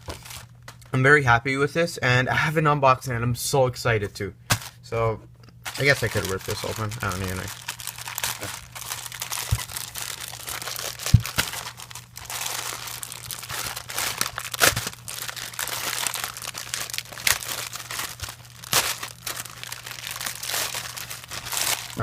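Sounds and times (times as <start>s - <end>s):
packaging crinkling: 0.0s - 0.9s, 5.7s - 22.0s
packaging ripping snaps: 5.7s - 22.0s.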